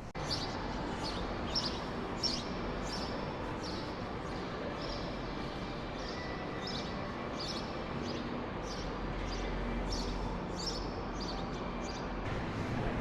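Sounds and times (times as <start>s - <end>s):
street noise: 0.0s - 13.0s.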